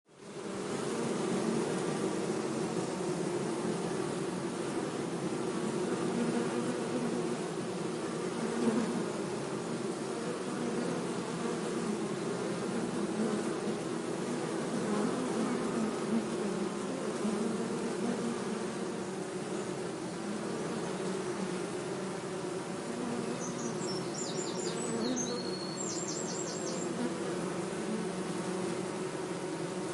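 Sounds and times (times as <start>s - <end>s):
bees buzzing: 0.1s - 29.9s.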